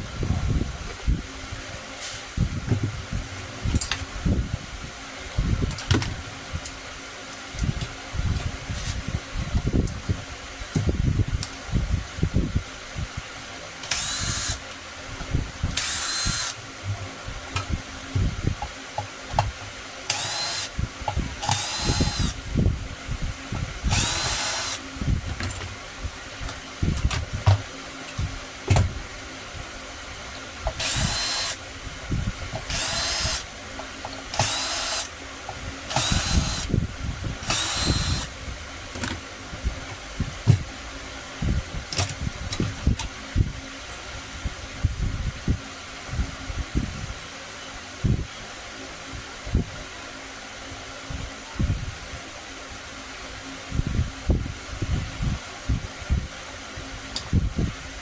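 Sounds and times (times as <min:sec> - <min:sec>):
power drill whining: 0:13.8 - 0:14.6, 0:15.7 - 0:17.0, 0:20.1 - 0:20.8, 0:21.4 - 0:22.4, 0:23.9 - 0:24.9, 0:30.7 - 0:31.6, 0:32.6 - 0:35.2, 0:35.8 - 0:36.7, 0:37.4 - 0:38.4.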